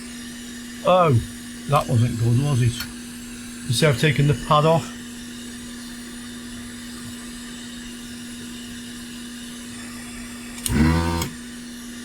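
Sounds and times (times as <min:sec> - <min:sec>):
electric blower whooshing: 0:10.6 - 0:11.5.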